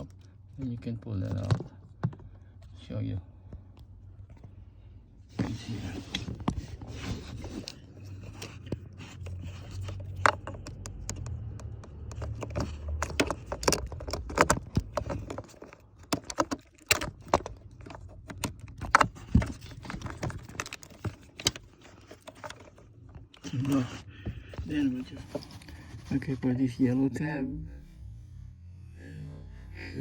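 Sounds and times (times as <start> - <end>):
plastic connectors clicking and rattling: 6.0 - 23.8
low hum: 25.3 - 30.0.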